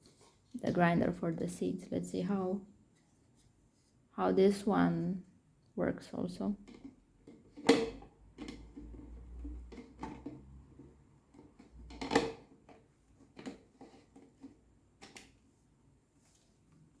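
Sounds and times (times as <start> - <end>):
plastic parts knocking and clicking: 6.7 - 15.3.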